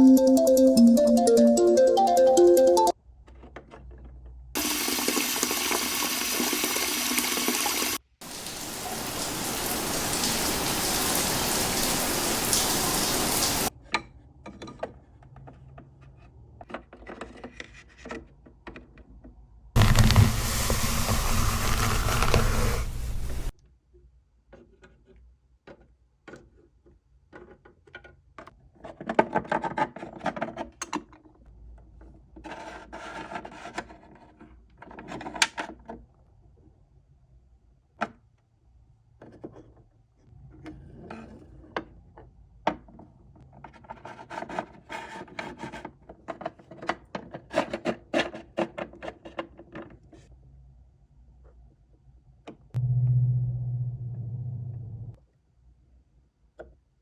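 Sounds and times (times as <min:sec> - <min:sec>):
rushing water: 0:04.6 - 0:13.7, 0:19.8 - 0:22.4
deep rumble: 0:52.8 - 0:55.2.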